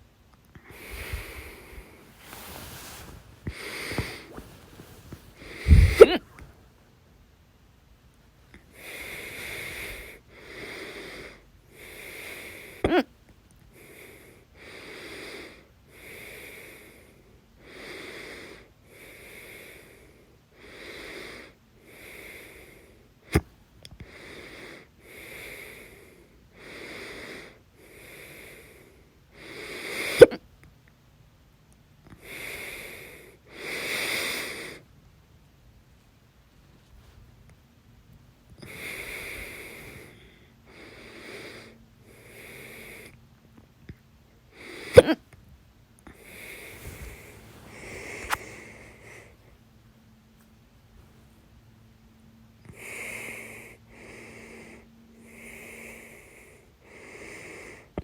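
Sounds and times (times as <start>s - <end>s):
heavy wheezy breathing: 0.6s - 6.6s, 8.7s - 12.8s, 38.6s - 43.2s, 46.1s - 49.8s, 52.7s - 58.0s
person hiccuping: 5.6s - 6.4s, 12.9s - 13.1s.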